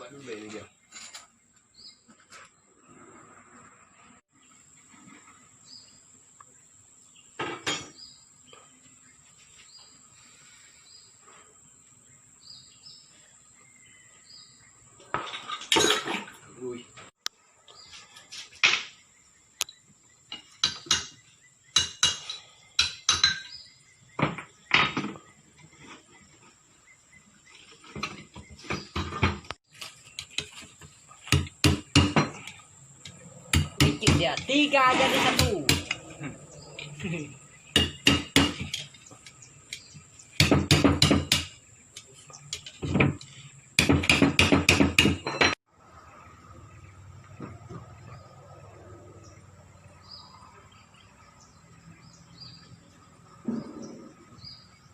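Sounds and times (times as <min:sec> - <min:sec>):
metal tools clanking together: 0:15.3 - 0:16.4.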